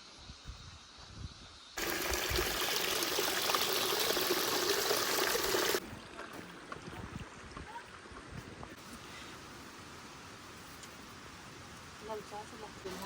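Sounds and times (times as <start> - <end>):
rushing stream water: 1.8 - 8.2.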